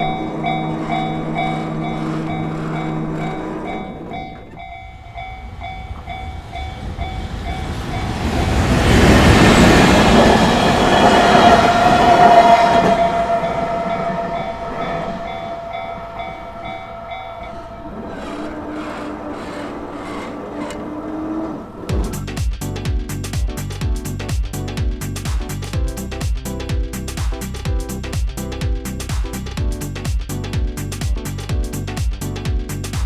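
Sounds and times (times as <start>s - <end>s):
railway crossing bell clanging: 0.0s - 21.9s
train rumbling past: 0.0s - 32.0s.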